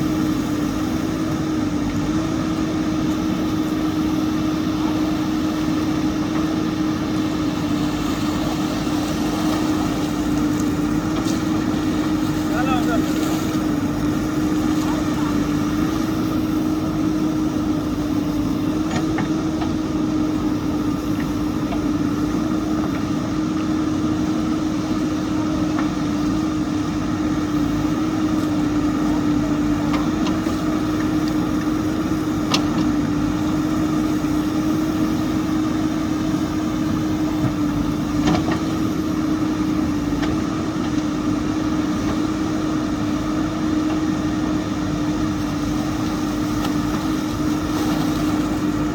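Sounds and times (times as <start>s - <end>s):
diesel engine running steadily: 0.0s - 48.9s.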